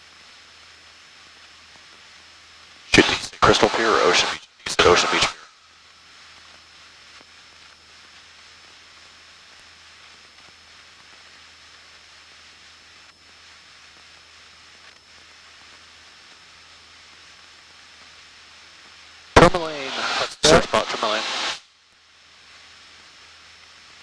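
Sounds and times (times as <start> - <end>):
thin high whine: 2.9 - 5.6, 19.4 - 21.6
faint hiss: 19.4 - 21.6.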